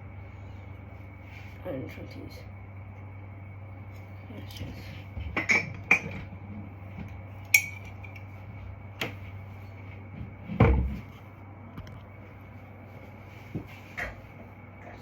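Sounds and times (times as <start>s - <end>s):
steady hum: 0.0s - 15.0s
kitchenware clinking: 5.4s - 6.2s, 7.5s - 8.2s.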